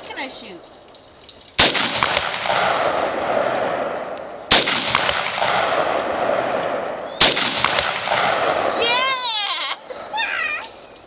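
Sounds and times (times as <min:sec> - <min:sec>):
rifle shots: 0:01.6 - 0:08.8.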